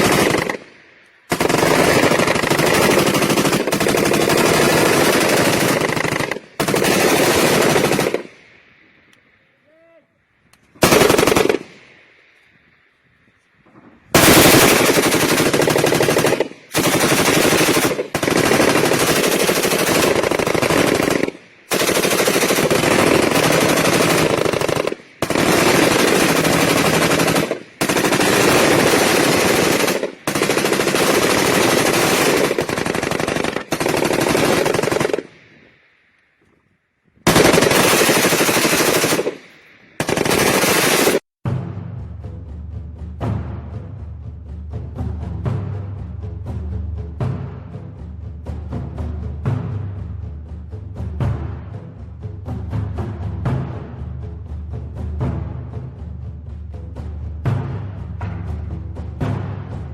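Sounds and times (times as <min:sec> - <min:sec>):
machine gun automatic bursts: 0:00.0 - 0:00.6, 0:01.3 - 0:08.3, 0:10.8 - 0:11.7, 0:14.2 - 0:35.3, 0:37.3 - 0:39.4, 0:40.0 - 0:41.2.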